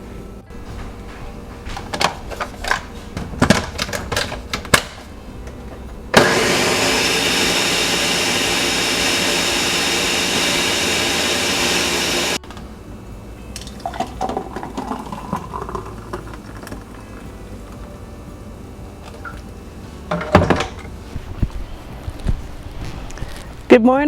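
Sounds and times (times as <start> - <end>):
electric blender running: 6.1 - 12.4.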